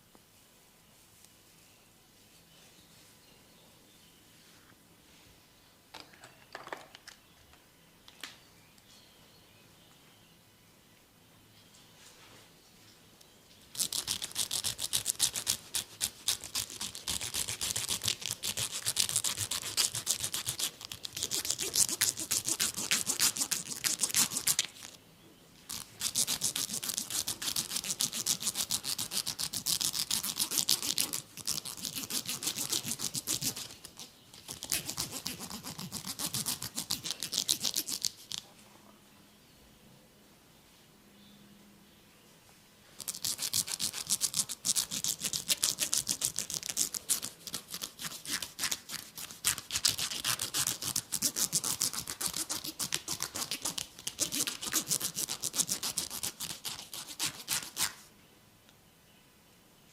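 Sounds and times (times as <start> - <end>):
fingers scratching scalp: 13.7 - 25.0, 25.7 - 38.4, 43.0 - 58.0.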